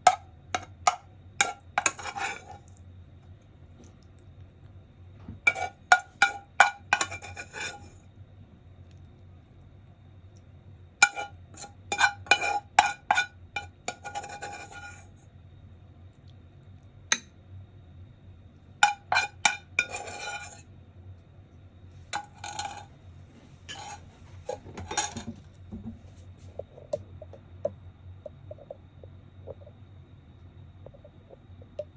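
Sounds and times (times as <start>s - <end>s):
cutlery and dishes clinking: 23.7s - 25.4s.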